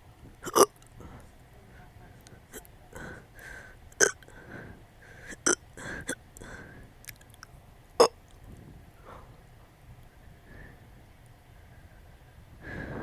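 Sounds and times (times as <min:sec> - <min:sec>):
hiccups with small burps: 0:00.4 - 0:00.8, 0:04.0 - 0:04.2
soft breathing: 0:00.4 - 0:07.5, 0:08.4 - 0:09.6, 0:10.2 - 0:11.9, 0:12.5 - 0:13.0.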